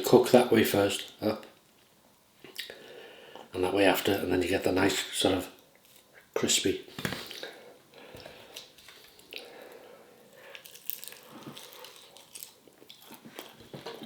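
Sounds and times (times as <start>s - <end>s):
person chewing crispy food: 8.5s - 14.0s.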